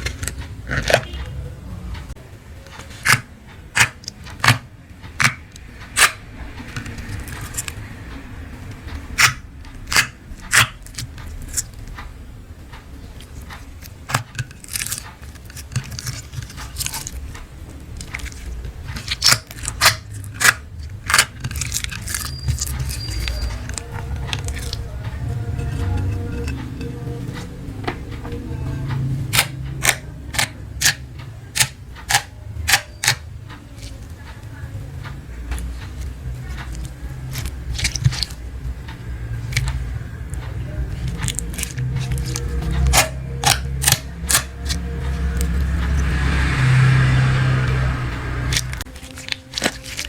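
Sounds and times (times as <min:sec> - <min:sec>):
scissors snipping plastic: 0:00.0 - 0:01.3, 0:02.6 - 0:07.8, 0:09.2 - 0:12.1, 0:13.2 - 0:25.0, 0:29.3 - 0:34.0, 0:35.5 - 0:38.4, 0:39.4 - 0:46.1, 0:48.5 - 0:50.0.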